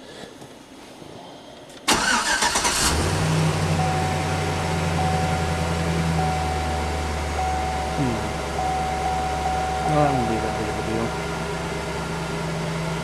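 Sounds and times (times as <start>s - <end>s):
starter cranking engine: 1.9s - 3.1s
engine idling: 1.9s - 13.0s
high electronic tone: 3.7s - 11.2s.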